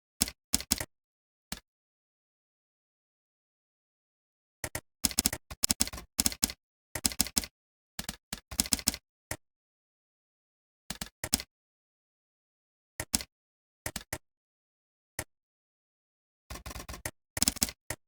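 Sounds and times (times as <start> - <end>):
computer keyboard typing: 16.5 - 18.0.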